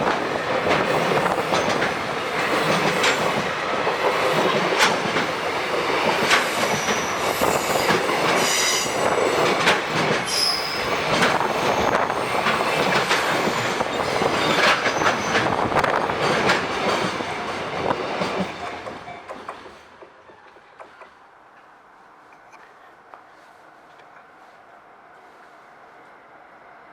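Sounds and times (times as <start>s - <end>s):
freight train wheels clacking: 0.0s - 22.7s
high-pitched wheel squeal: 10.3s - 10.9s.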